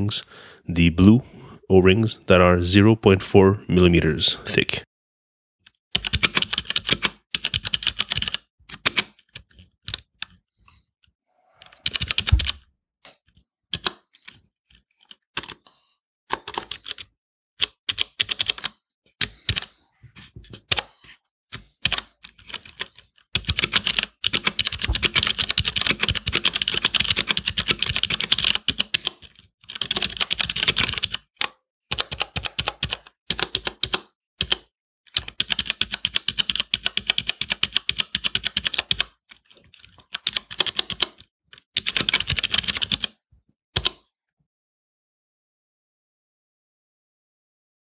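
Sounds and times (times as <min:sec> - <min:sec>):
mechanical keyboard typing: 0:06.0 - 0:09.0, 0:23.4 - 0:29.1, 0:29.7 - 0:31.2, 0:35.2 - 0:39.0, 0:41.8 - 0:43.1.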